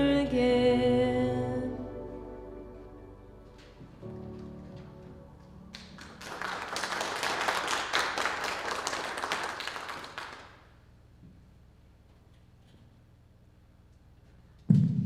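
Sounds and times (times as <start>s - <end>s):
congregation clapping: 5.7s - 10.8s.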